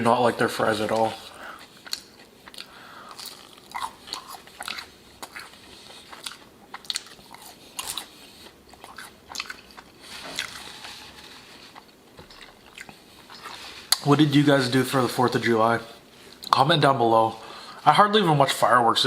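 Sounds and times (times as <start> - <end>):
person chewing food: 0.8 - 14.1.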